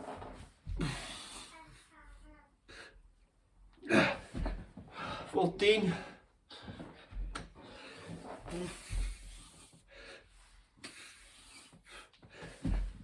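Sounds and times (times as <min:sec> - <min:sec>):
person breathing hard: 0:06.0 - 0:13.0.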